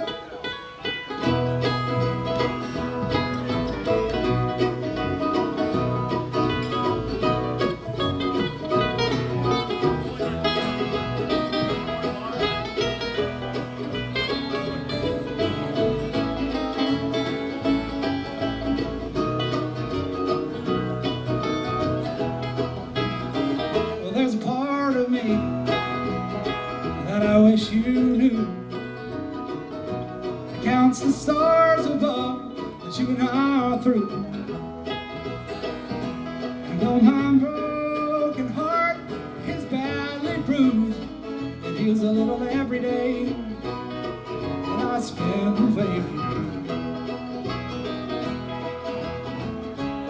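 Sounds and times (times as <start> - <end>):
banjo and guitar picking: 0.0 - 50.0
bass line: 0.9 - 50.0
person singing: 36.6 - 43.8, 44.6 - 46.8.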